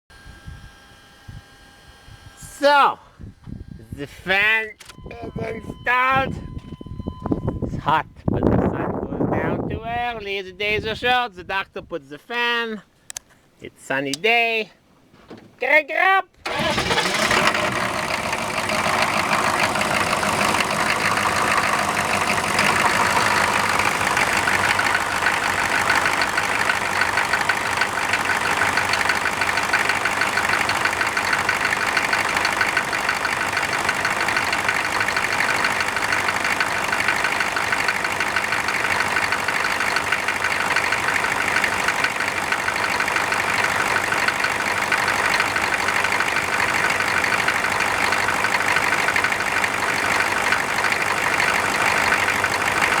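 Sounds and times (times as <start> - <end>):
cooling fan rushing: 16.4 - 35.0
engine idling: 16.4 - 53.0.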